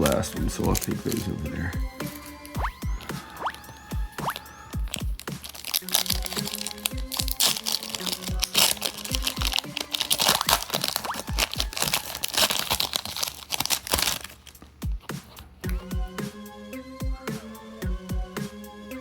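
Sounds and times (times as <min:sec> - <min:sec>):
electronic music with heavy beat: 0:00.0 - 0:07.4, 0:08.0 - 0:12.0, 0:14.8 - 0:18.8
wrappers torn and crinkled: 0:00.0 - 0:15.6.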